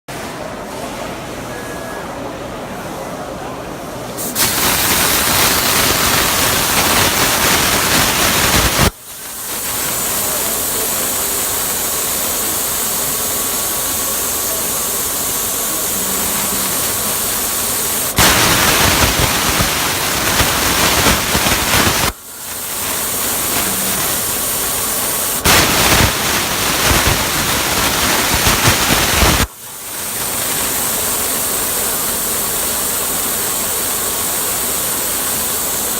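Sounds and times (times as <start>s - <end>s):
plasma cutting torch hissing: 4.2s - 35.9s.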